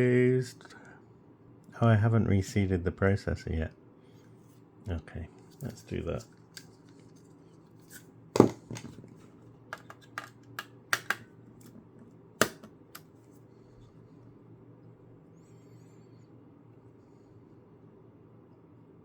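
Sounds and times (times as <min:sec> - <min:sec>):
faint steady hum: 0:00.0 - 0:19.0
clicks of laptop parts handled: 0:09.7 - 0:11.8, 0:12.4 - 0:13.1.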